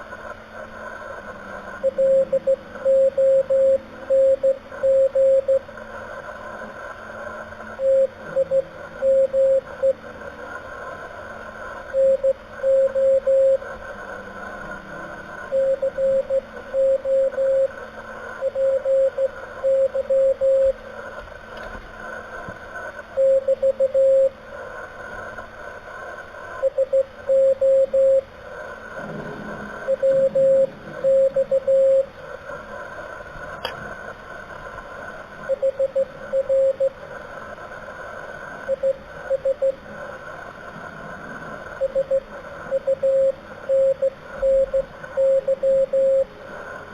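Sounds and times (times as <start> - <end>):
receiver hiss: 0.0 - 46.9
morse code tone: 1.8 - 5.6, 7.8 - 10.0, 11.9 - 13.6, 15.5 - 17.7, 18.4 - 20.8, 23.2 - 24.3, 26.6 - 28.2, 29.5 - 32.1, 35.5 - 37.0, 38.7 - 39.8, 41.8 - 46.3.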